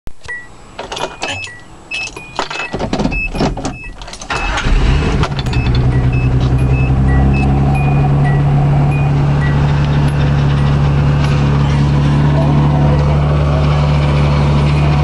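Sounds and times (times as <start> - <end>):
pickup engine starting and idling: 3.1 - 15.0.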